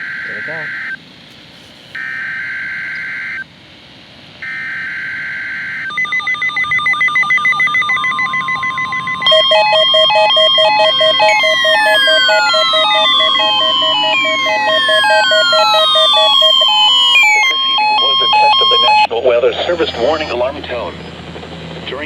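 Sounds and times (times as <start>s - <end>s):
steady warning alarm tone: 0.0s - 1.0s, 2.0s - 3.5s, 4.4s - 22.0s
screechy digital data tones: 5.8s - 21.1s
electronic alert beeps and warbles: 5.9s - 20.6s
falling pitch glides: 6.7s - 19.1s.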